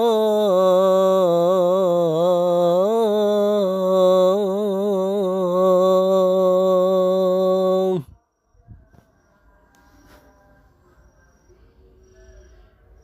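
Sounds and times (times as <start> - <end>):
man singing call to prayer: 0.0 - 9.0.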